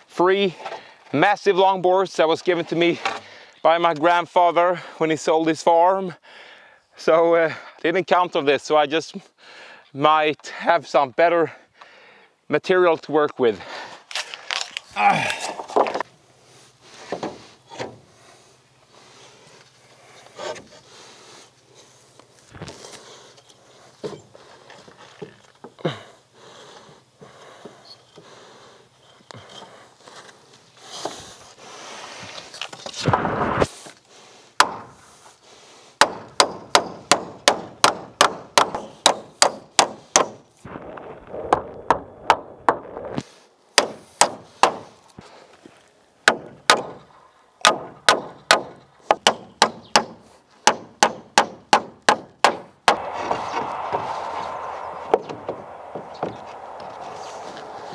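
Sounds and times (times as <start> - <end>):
hammer striking nails into wood: 34.6 - 35.0, 36.0 - 40.4, 43.8 - 44.9, 46.3 - 47.0, 47.6 - 53.1
scraping: 52.9 - 57.9.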